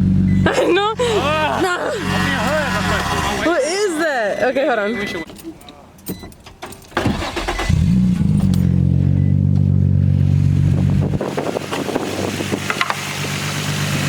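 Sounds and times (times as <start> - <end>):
car engine starting and idling: 0.0 - 3.6, 6.9 - 14.0.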